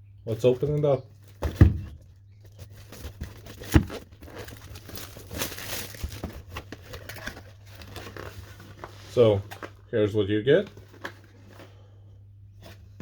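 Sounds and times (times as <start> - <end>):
packaging crinkling and rustling: 2.5 - 9.9, 10.5 - 11.9.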